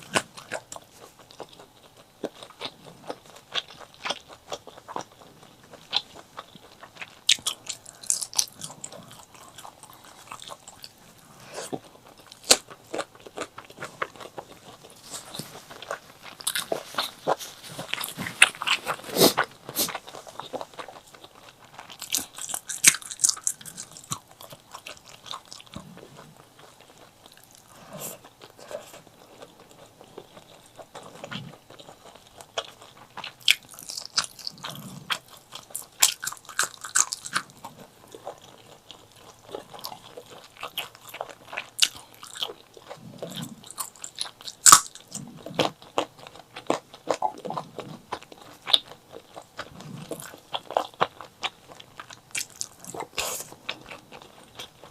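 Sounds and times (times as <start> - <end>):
biting and crunching: 0.0 - 54.9.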